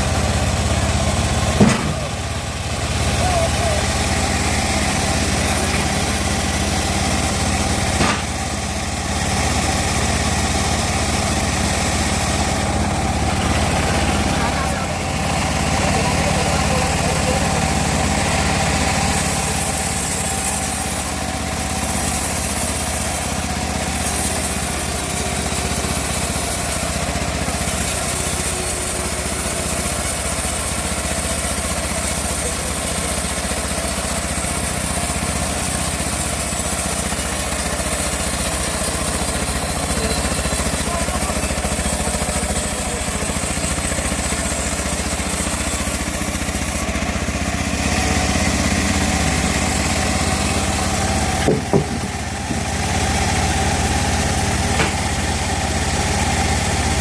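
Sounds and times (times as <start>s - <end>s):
bandsaw mill engine running: 0.0s - 57.0s.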